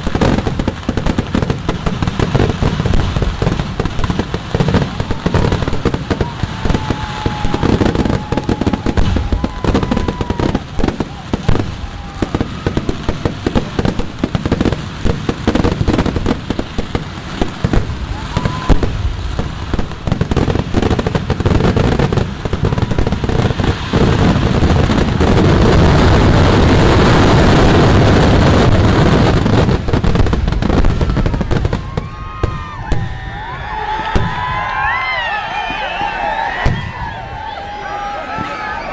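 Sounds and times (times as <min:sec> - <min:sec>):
firecracker bangs: 0:00.0 - 0:34.9, 0:35.5 - 0:37.5.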